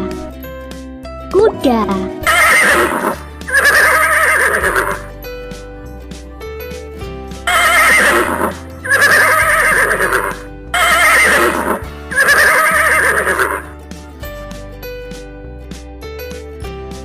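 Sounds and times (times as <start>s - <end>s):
background music: 0.0s - 17.0s
horse neighing: 2.2s - 5.1s, 7.5s - 13.7s.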